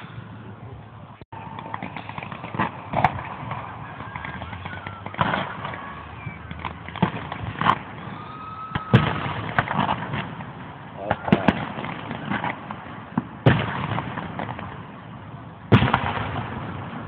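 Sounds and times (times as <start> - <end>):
fireworks booming: 0.0 - 17.0.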